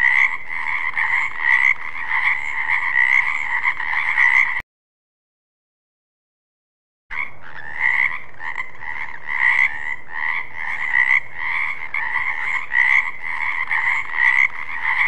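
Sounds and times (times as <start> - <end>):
frogs croaking: 0.0 - 4.6, 7.1 - 15.0.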